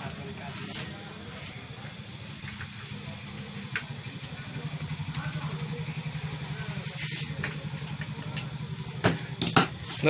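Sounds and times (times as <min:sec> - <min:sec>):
low mechanical hum: 0:00.0 - 0:10.0.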